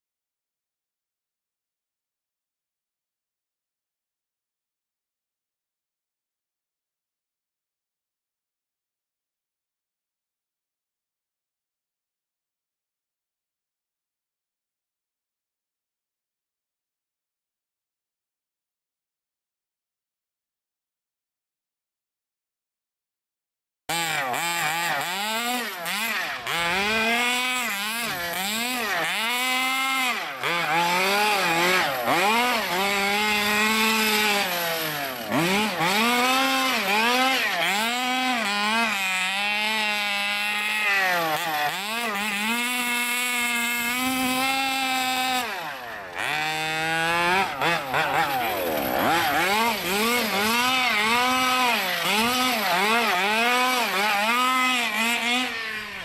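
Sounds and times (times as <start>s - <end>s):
two-stroke engine revving: 23.9s - 56.0s.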